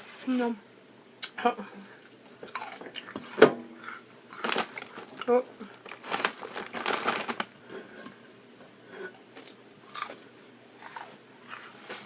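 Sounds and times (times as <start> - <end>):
chewing: 2.0 - 6.0, 9.1 - 10.2, 10.8 - 12.0
crunching bites: 2.4 - 5.3, 9.4 - 10.2, 10.8 - 11.8.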